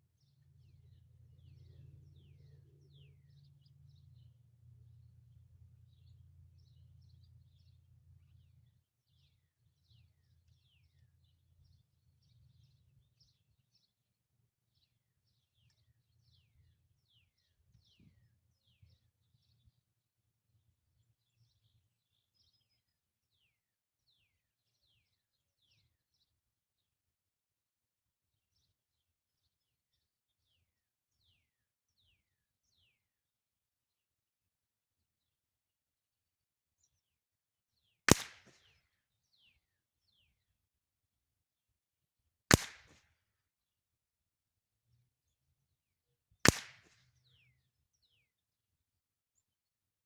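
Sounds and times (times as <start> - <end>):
low steady rumble: 0.2 - 8.7.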